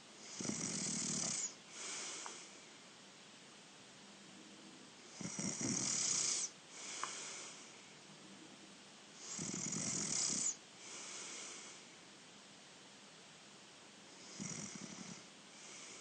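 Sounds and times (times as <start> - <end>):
person snoring: 0.3 - 2.4, 5.2 - 7.6, 9.2 - 11.8, 14.2 - 16.0
breathy breath: 1.7 - 2.7, 6.3 - 8.0, 10.8 - 12.0.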